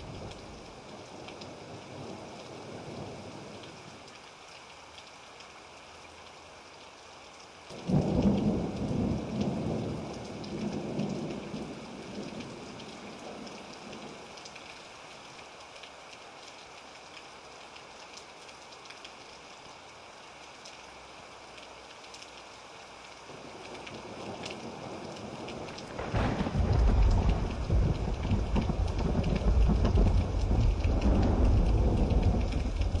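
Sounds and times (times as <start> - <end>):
steady rain: 0.0 - 33.0
thunder clap rolling: 25.9 - 33.0.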